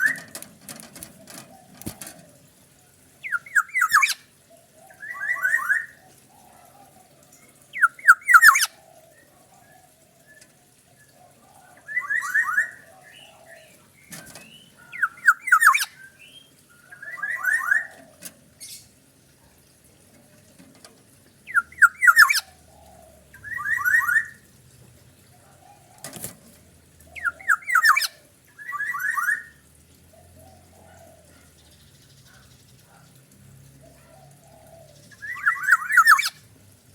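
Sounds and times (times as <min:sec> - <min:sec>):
harsh rasping bird calls: 0:01.1 - 0:19.1, 0:21.3 - 0:24.5, 0:25.3 - 0:29.6, 0:33.8 - 0:36.5
oriole calling in quick notes: 0:21.5 - 0:22.6, 0:27.2 - 0:29.5.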